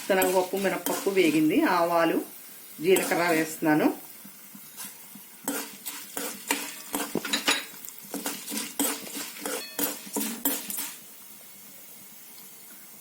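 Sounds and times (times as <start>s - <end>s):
spoon scraping a pan: 0.0s - 1.6s, 2.8s - 3.6s, 4.5s - 11.1s.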